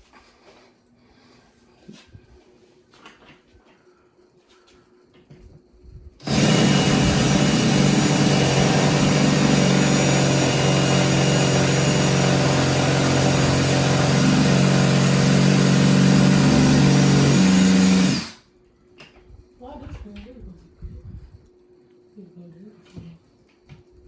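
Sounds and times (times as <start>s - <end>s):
small electric motor running: 6.2s - 18.4s.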